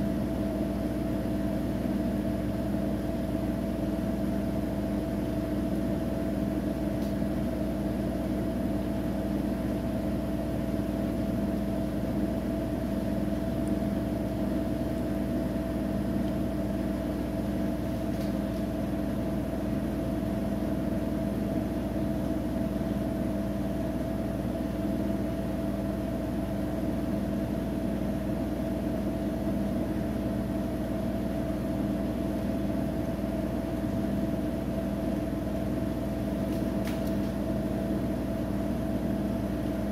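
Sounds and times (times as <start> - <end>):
washing machine spinning: 0.0 - 39.9.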